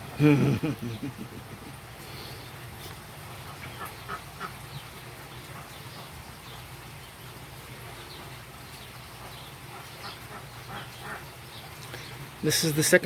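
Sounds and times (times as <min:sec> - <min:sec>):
steady low hum: 0:00.0 - 0:04.8
ducks quacking: 0:03.3 - 0:04.8, 0:09.6 - 0:11.4.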